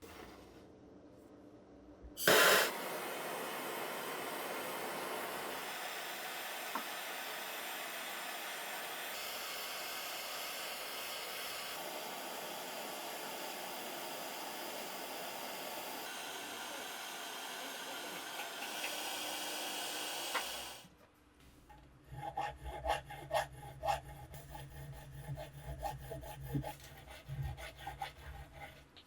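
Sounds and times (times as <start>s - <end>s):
hiss of air or spray: 2.2s - 20.8s.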